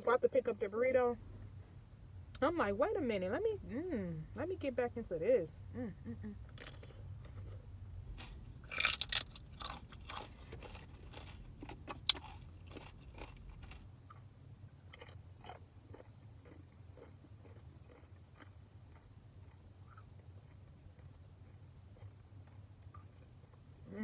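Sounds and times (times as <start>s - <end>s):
quiet chewing: 1.2s - 13.9s, 14.9s - 20.0s
person crunching tortilla chips: 6.4s - 13.8s.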